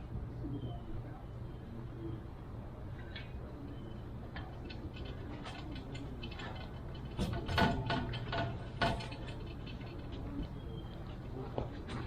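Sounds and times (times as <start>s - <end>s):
metal parts clicking: 4.3s - 12.0s.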